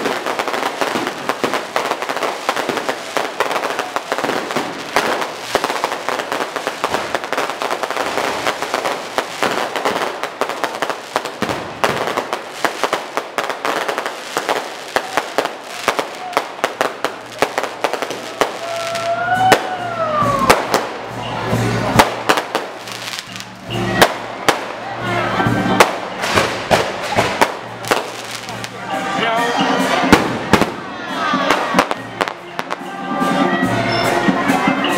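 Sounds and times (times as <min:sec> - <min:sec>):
firecrackers cracking and popping: 0:00.0 - 0:28.8, 0:29.8 - 0:32.9.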